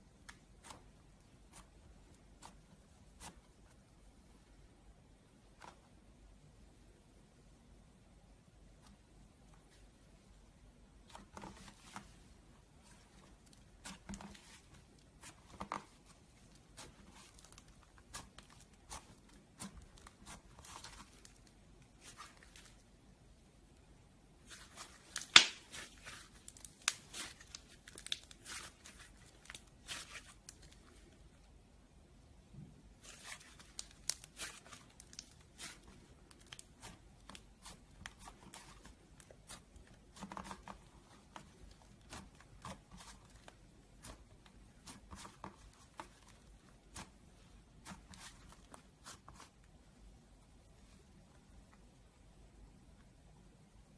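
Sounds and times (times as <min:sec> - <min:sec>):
slime crackling and popping: 0:25.0 - 0:30.7, 0:33.2 - 0:47.1.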